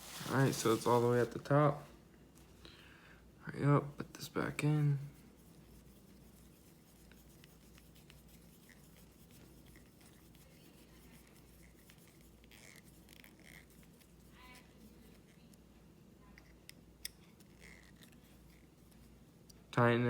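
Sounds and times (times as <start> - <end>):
small clicks and scratches of handling: 4.8 - 19.7.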